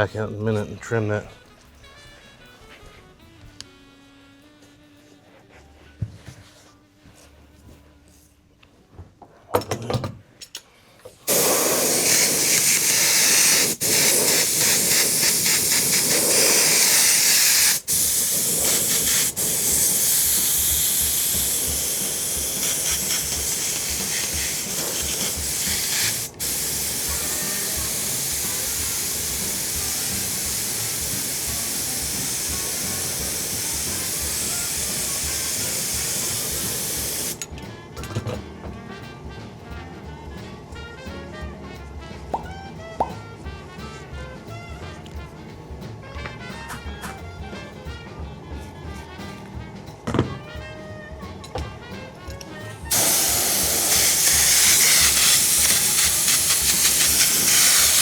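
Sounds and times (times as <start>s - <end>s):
spray nozzle hissing: 11.3s - 37.4s, 52.9s - 58.0s.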